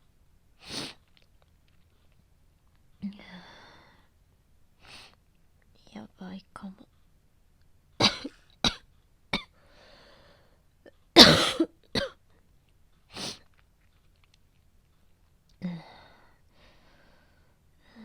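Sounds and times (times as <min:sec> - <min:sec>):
woman coughing: 0:08.0 - 0:08.8, 0:11.2 - 0:12.2.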